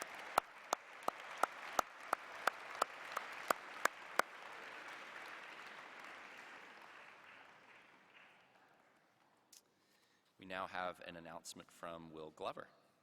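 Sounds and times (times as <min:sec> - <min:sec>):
sharp claps close by: 0:00.0 - 0:04.6
audience applauding: 0:00.0 - 0:08.4.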